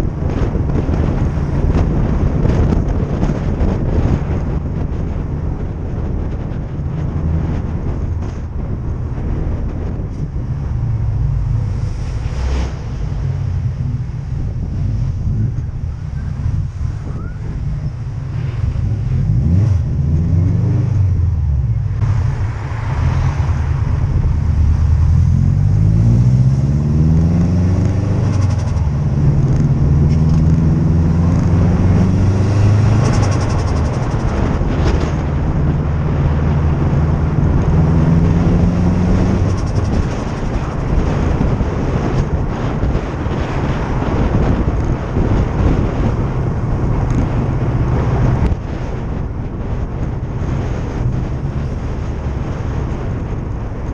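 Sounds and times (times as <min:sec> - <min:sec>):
turbocharged car engine revving: 0:18.2 - 0:53.2.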